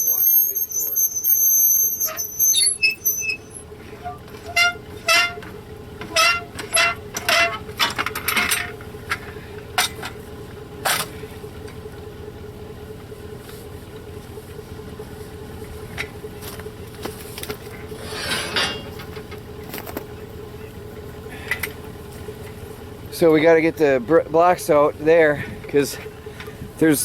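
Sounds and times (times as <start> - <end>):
short beeps: 0.0 - 3.6
metal clinks and knocks: 4.3 - 9.2, 17.6 - 20.2.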